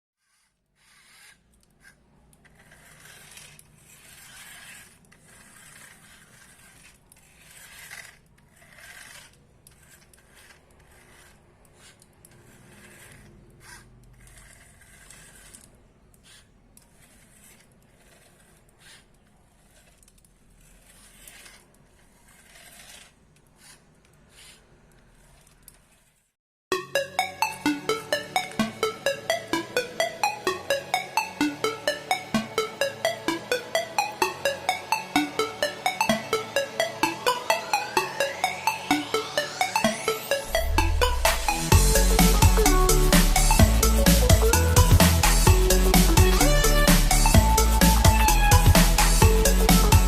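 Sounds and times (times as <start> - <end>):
cardboard scraping and rubbing: 0.2 - 26.4.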